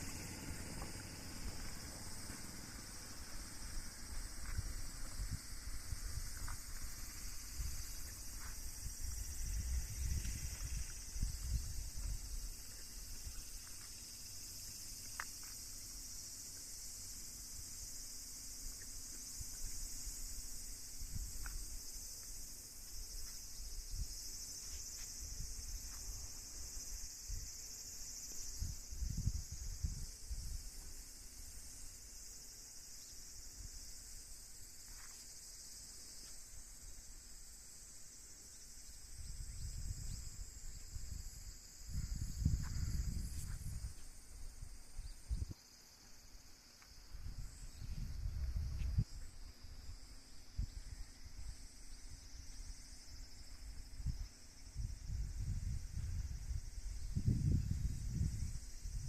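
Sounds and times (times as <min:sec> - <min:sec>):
insects chirring: 0:00.0 - 0:59.0.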